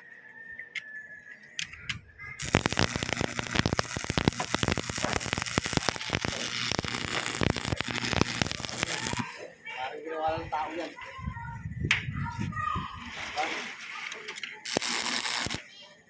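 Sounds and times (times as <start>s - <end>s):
crackling and popping: 1.6s - 9.3s, 14.6s - 15.6s.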